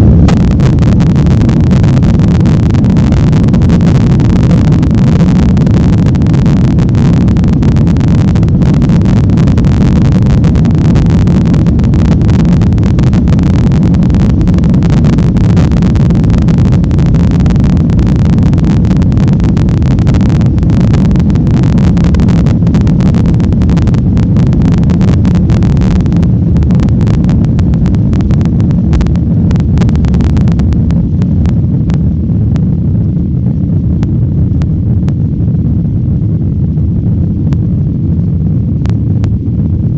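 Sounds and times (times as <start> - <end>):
jet engines roaring: 0.0 - 3.2
rushing air: 0.0 - 33.6
fine crackle: 0.0 - 39.9.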